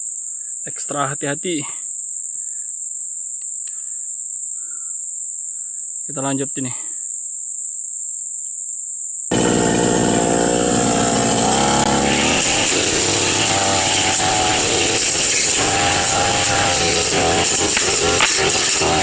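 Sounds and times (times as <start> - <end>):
brush cutter engine at high revs: 9.3 - 19.0
high insect trilling: 9.3 - 19.0.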